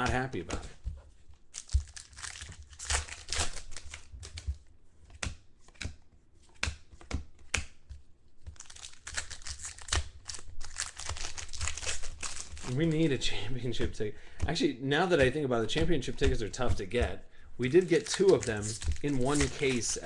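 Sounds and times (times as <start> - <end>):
wrappers crinkling and tearing: 1.5 - 4.4, 8.6 - 13.3, 17.6 - 20.0.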